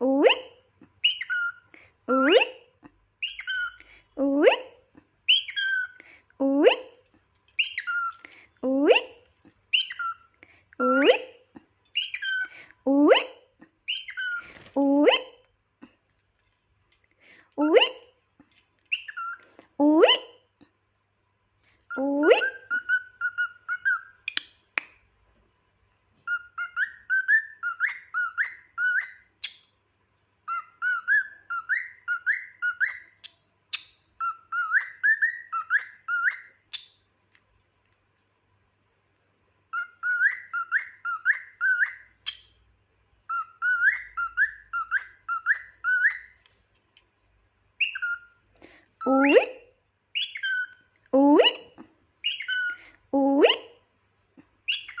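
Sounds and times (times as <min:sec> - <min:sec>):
cockatiel whistling: 0:39.7 - 0:42.5, 0:54.7 - 0:55.0.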